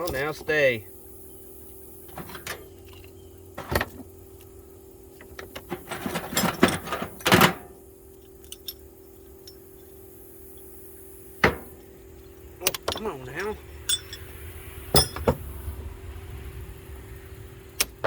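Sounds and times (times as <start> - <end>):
steady low hum: 0.0 - 18.0
metal tools clinking: 2.1 - 4.1, 5.2 - 10.0, 12.6 - 14.3, 15.0 - 15.4.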